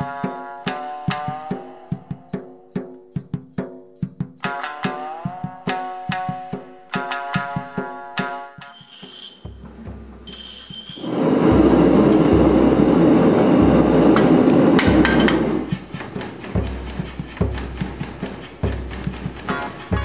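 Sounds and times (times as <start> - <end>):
power hammer pounding steel: 10.0 - 20.0.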